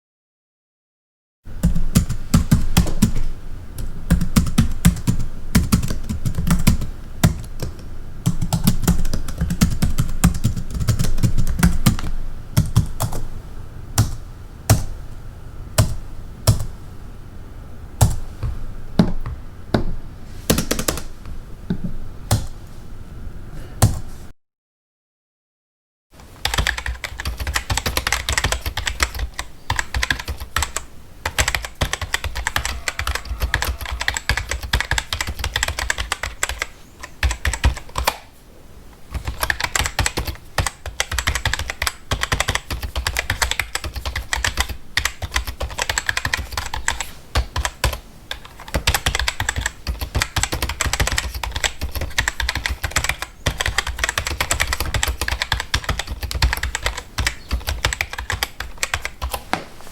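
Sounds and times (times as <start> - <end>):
fast typing on computer keyboard: 1.6 - 13.2, 20.5 - 21.1, 26.3 - 38.2, 39.1 - 59.4.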